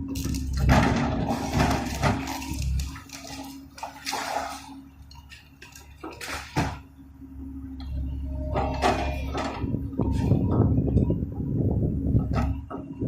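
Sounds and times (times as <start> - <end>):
rubble clattering and crashing: 0.0 - 6.9
excavator engine running: 0.0 - 13.0.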